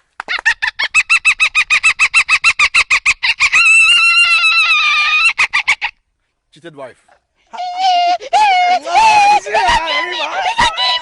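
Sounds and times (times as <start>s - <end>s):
boy whistling high: 7.6s - 11.0s.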